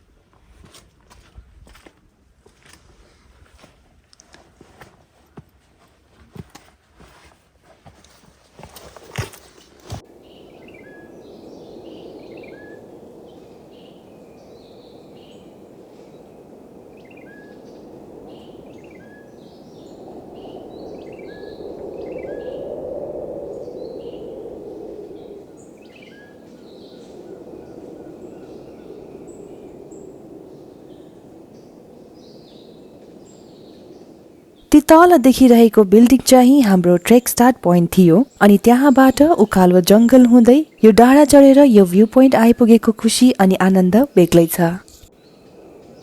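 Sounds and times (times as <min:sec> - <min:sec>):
forest birds chirping: 0:10.0 - 0:46.0.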